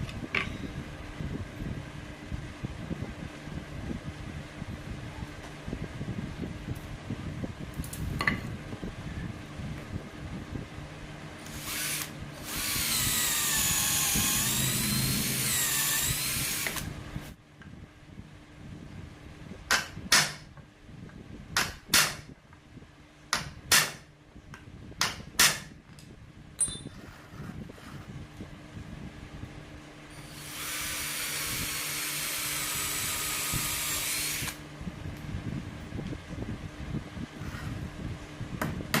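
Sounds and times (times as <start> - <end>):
power tool cutting wood: 11.5 - 16.9, 30.2 - 34.6.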